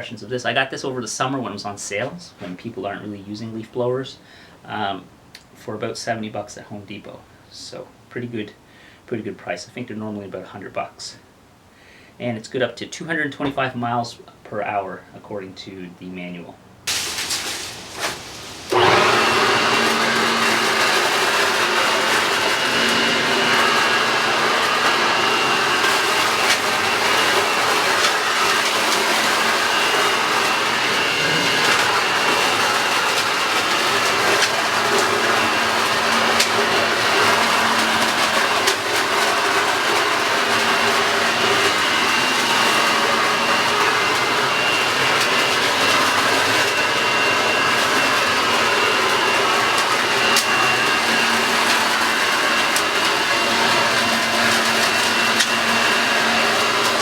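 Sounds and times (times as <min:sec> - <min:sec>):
leaf blower whining: 0:16.9 - 0:57.0.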